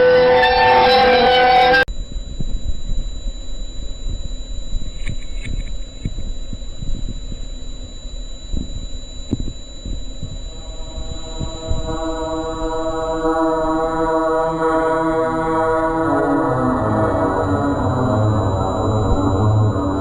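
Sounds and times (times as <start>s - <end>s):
music: 0.0s - 1.9s
high-pitched electronic whine: 0.0s - 20.0s
low rumble of static noise: 1.9s - 20.0s.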